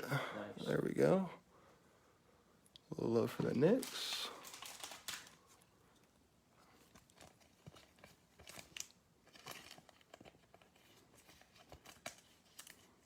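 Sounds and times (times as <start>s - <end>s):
cards and foil wrappers crinkling: 3.2s - 13.0s.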